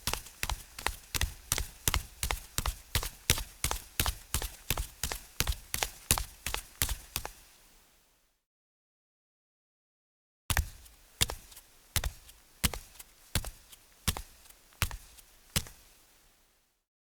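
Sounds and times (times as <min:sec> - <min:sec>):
bare footsteps on concrete: 0:00.0 - 0:07.4, 0:10.5 - 0:15.9.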